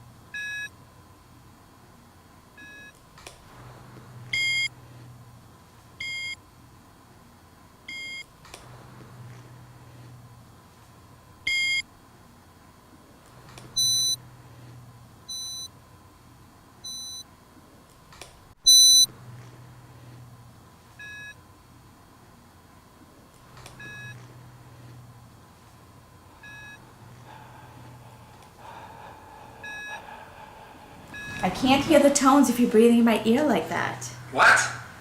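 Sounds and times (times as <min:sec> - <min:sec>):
hearing test beeps: 0:18.7 - 0:19.1, 0:26.4 - 0:26.8, 0:29.6 - 0:30.0
faint breathing: 0:26.3 - 0:33.6.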